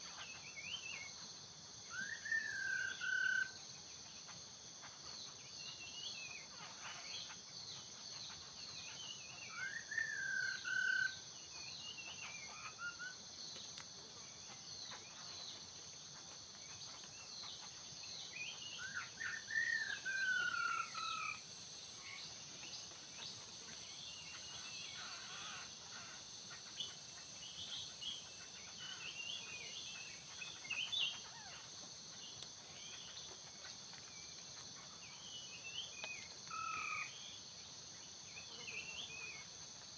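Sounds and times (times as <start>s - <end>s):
bird chirps: 8.2s - 37.4s.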